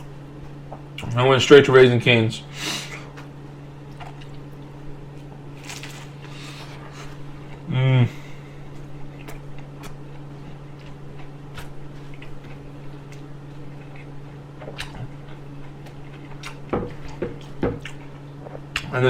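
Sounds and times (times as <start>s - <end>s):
steady low hum: 0.0s - 19.0s
person chewing food: 2.9s - 7.7s, 8.5s - 19.0s.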